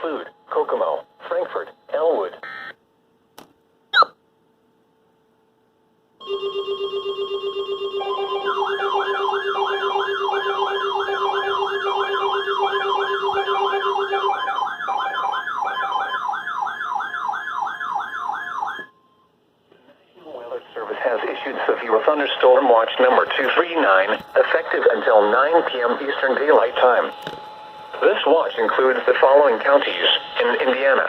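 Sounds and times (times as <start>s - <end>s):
warbling siren: 6.2s - 19.2s
rapid low electronic beeping: 8.0s - 16.1s.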